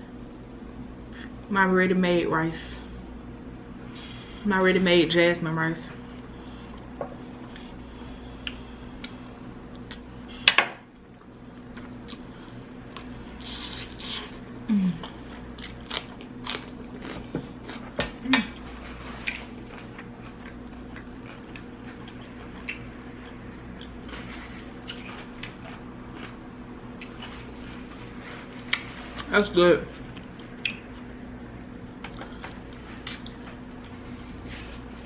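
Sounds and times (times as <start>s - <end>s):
person chewing: 6.1s - 10.2s, 11.1s - 29.3s.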